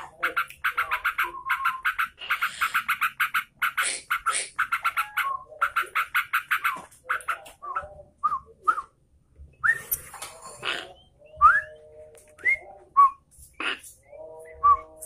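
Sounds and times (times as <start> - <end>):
bird chattering song: 0.0 - 7.6.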